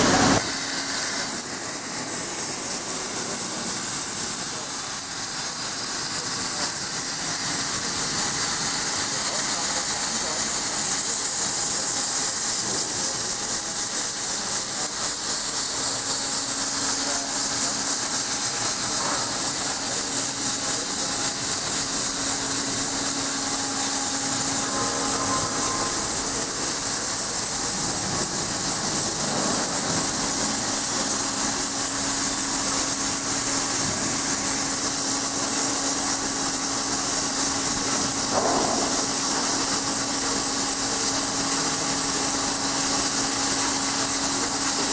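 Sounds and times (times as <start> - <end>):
drilling machine hiss and hum: 0.0 - 44.9.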